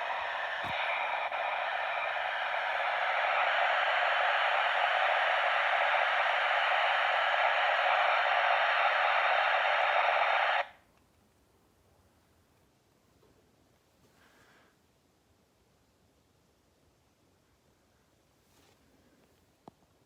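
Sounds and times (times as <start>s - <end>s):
steady static hiss: 0.0s - 20.0s.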